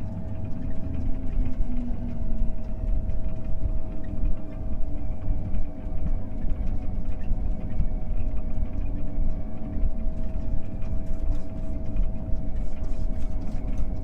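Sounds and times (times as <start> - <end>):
combine harvester engine rumble: 0.0 - 14.0
constant whine: 0.0 - 14.0.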